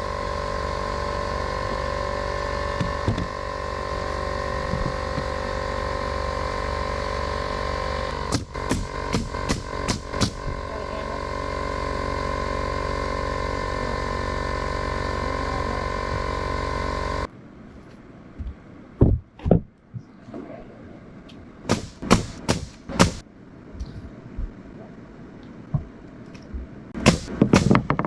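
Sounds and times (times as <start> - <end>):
machine hum: 0.0 - 17.4, 21.6 - 28.0
sharp knocks: 8.1 - 10.6, 21.7 - 23.2, 27.0 - 28.0.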